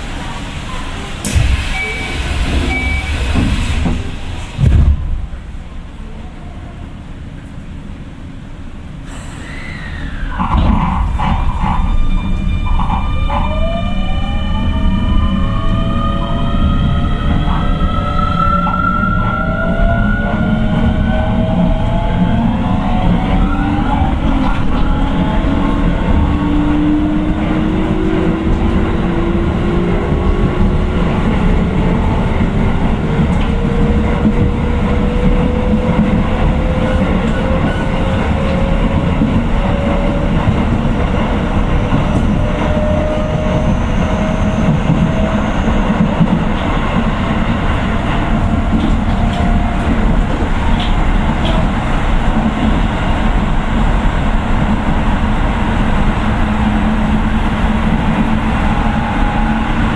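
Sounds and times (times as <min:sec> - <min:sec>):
train wheels rumbling on rail: 0:00.0 - 0:59.9
rail-joint clicks: 0:00.9 - 0:05.6, 0:24.2 - 0:53.5.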